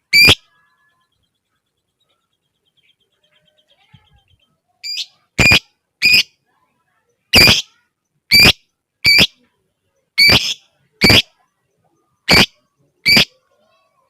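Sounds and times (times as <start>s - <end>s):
lovebird shrill calls: 0.1s - 0.4s, 4.8s - 6.3s, 7.4s - 7.7s, 8.3s - 9.4s, 10.2s - 11.3s, 12.3s - 13.3s.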